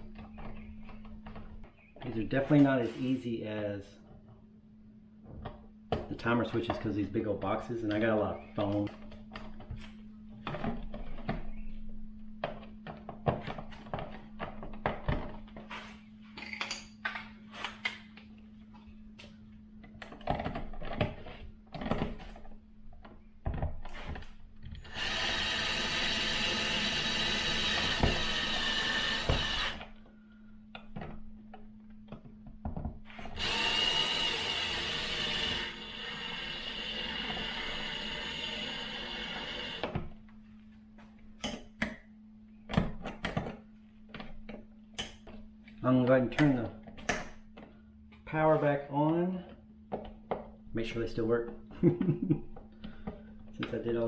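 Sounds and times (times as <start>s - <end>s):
power drill driving screws: 24.8s - 29.9s, 33.1s - 40.0s.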